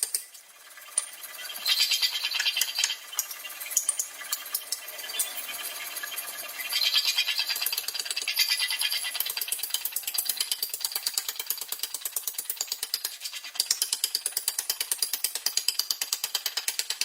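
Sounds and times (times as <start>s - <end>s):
rapid mechanical knocking: 1.0s - 17.0s.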